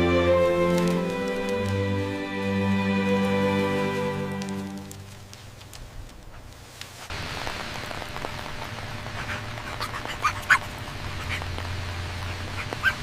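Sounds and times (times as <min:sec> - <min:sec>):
steady hiss: 0:00.0 - 0:13.0
dog whimpering and yipping: 0:12.6 - 0:13.0.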